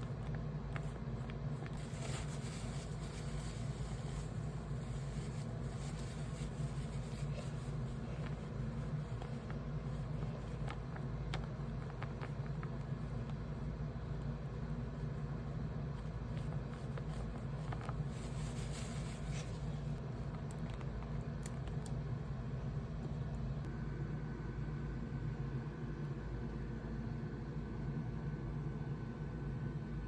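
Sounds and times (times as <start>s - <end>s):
paper rustling: 0.0s - 13.5s, 15.8s - 21.7s
low background hum: 0.0s - 30.0s.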